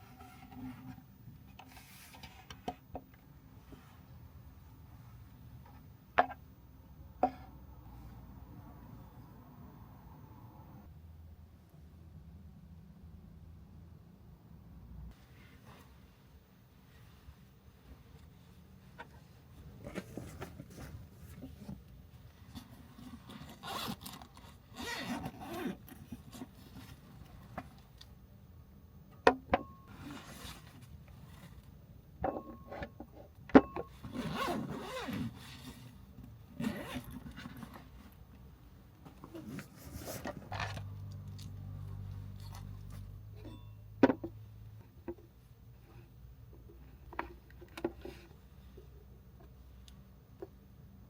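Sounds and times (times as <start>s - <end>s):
steady low hum: 0.0s - 51.0s
zipper pulls: 23.1s - 26.5s, 34.0s - 35.8s, 36.5s - 37.8s.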